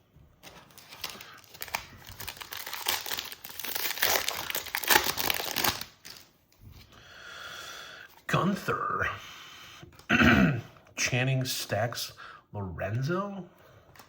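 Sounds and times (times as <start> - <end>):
card pack wrapper tearing: 0.4 - 6.3.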